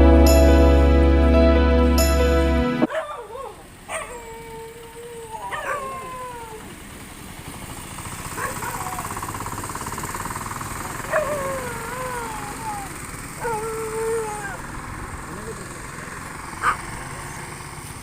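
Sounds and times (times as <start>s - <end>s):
dog howling: 2.9s - 6.7s, 11.0s - 14.7s
buzzing rattle: 7.7s - 11.2s.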